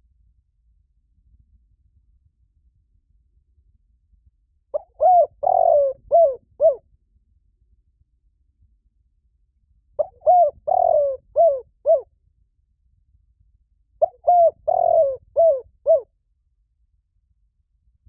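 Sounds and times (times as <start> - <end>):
dove cooing: 4.8 - 6.8, 10.0 - 12.0, 14.0 - 16.1.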